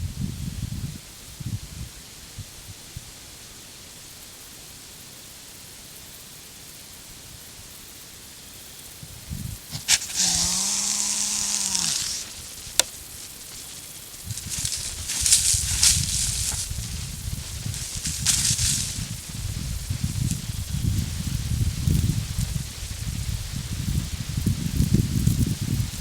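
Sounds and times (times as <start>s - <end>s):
deer hissing wheeze: 9.7s - 12.9s
deer snort: 9.7s - 12.9s.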